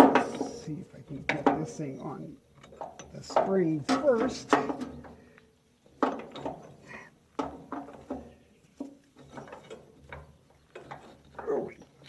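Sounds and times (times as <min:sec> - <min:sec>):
metal spring clanking: 0:00.0 - 0:05.2.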